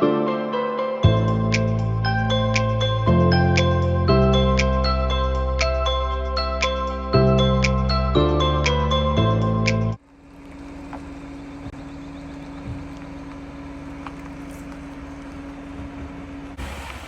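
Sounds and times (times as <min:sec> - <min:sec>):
background music: 0:00.0 - 0:10.0
van road and engine noise: 0:01.2 - 0:17.0.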